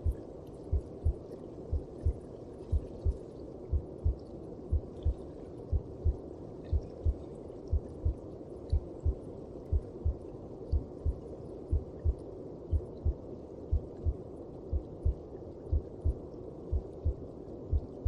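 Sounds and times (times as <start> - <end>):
muffled heartbeat thumps: 0.0 - 10.2, 11.0 - 18.0.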